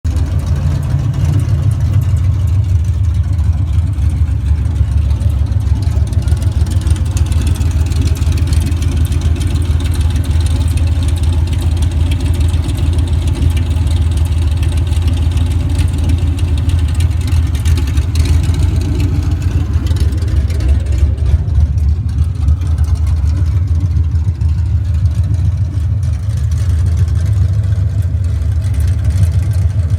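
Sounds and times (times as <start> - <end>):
car engine idling: 0.0 - 29.9.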